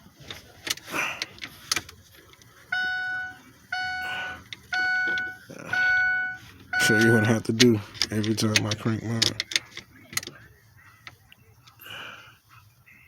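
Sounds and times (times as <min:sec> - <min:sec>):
vehicle warning chime beeping: 0:02.7 - 0:07.7.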